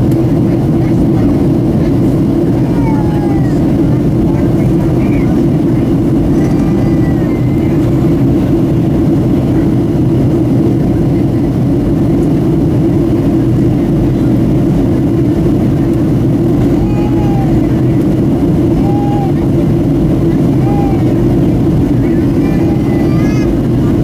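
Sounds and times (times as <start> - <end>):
airliner cabin engine drone: 0.0 - 24.0.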